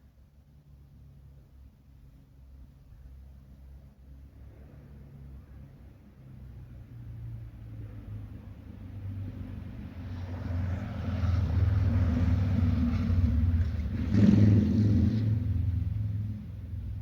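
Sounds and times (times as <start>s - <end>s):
vehicle passing by: 9.1s - 17.0s.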